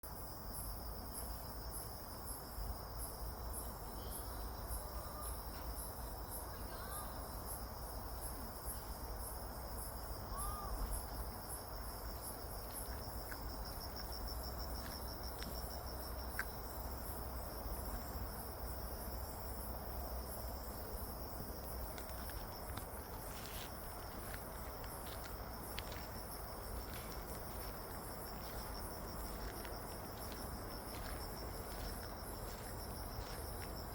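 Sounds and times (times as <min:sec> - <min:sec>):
crickets and insects chirping: 0:00.0 - 0:33.9.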